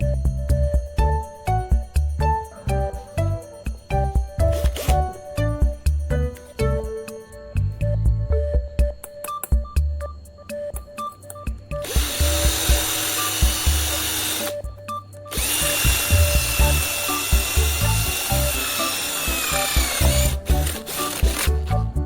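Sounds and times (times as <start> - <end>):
background music with steady beat: 0.0 - 22.0
power tool motor whining: 11.8 - 14.6, 15.3 - 21.8.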